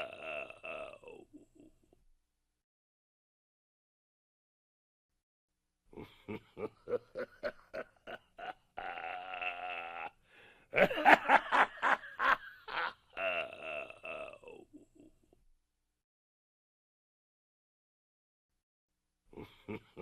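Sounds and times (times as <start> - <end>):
person laughing evilly: 0.0 - 2.0, 5.9 - 15.4, 19.3 - 20.0.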